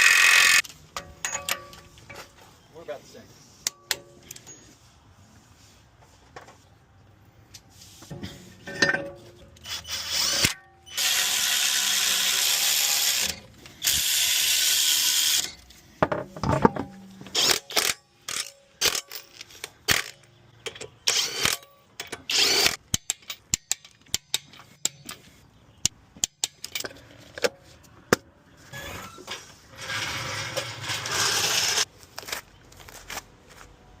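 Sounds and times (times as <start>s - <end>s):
power tool running: 0.0s - 0.6s.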